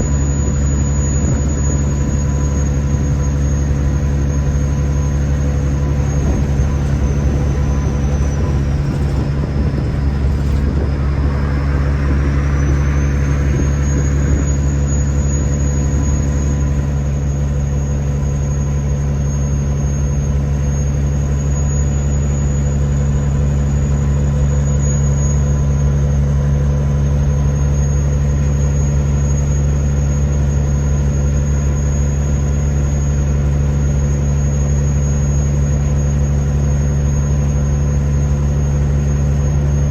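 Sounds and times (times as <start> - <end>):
truck diesel engine droning: 0.0 - 39.9
rush of air: 0.1 - 16.9.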